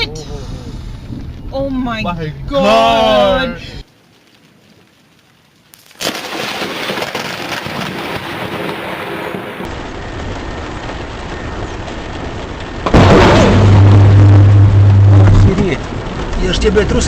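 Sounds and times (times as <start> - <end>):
steady rain: 0.0 - 17.0
thunder rumbling: 6.0 - 17.0
sudden loud blast: 12.8 - 15.8.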